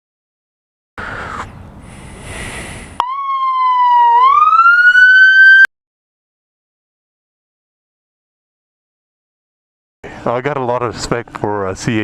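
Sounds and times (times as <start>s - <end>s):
police siren wailing: 3.0s - 5.7s.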